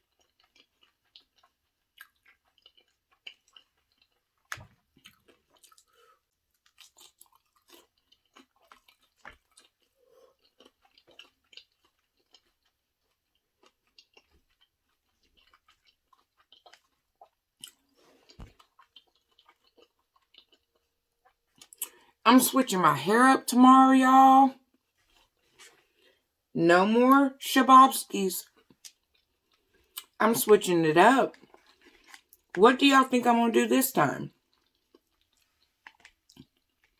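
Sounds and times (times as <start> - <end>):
wet chewing mouth clicks: 0.0 - 22.0, 28.8 - 30.2, 34.6 - 36.9.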